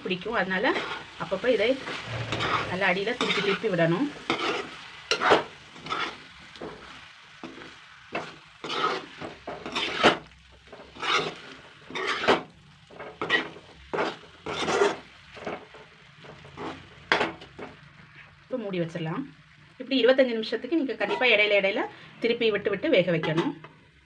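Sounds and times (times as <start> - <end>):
light sizzle: 0.0 - 24.0
spatula scraping a pan: 0.7 - 18.3, 20.9 - 21.5.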